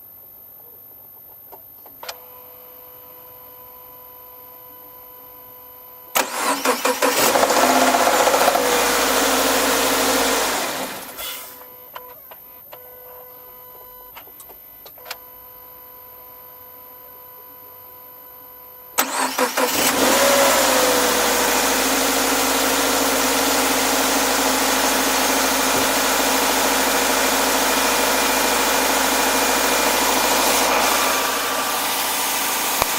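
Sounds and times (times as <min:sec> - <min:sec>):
car engine running loudly: 0:07.1 - 0:11.2, 0:19.7 - 0:32.9.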